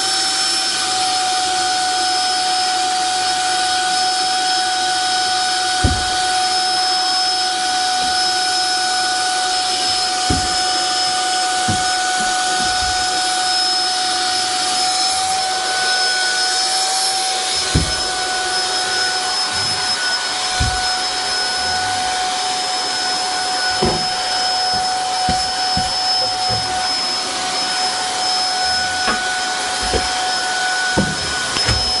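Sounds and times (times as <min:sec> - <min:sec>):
vacuum cleaner running: 0:00.0 - 0:32.0
short dull knocks: 0:10.2 - 0:10.8, 0:23.7 - 0:26.8.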